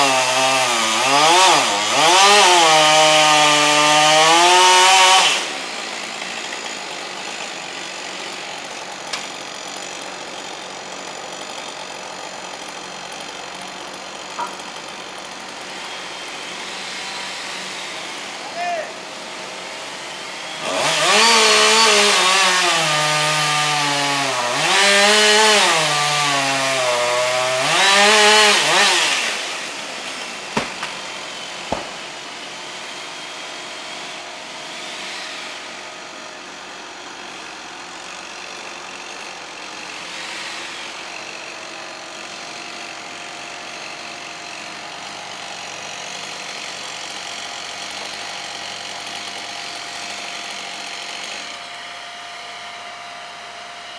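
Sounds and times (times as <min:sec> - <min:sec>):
chainsaw revving: 0:00.0 - 0:53.9
sharp knocks: 0:31.7 - 0:32.0.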